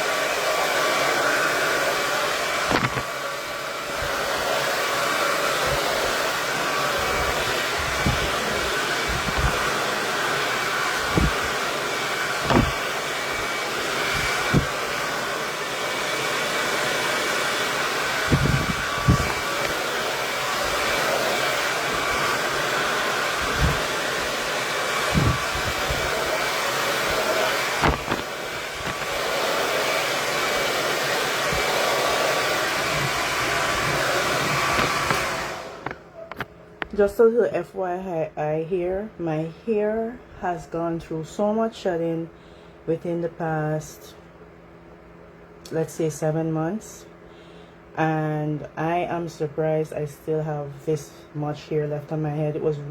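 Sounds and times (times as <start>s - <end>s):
hair dryer blowing air: 0.0s - 37.0s
low thuds: 12.4s - 12.8s, 18.3s - 19.8s, 25.1s - 26.2s.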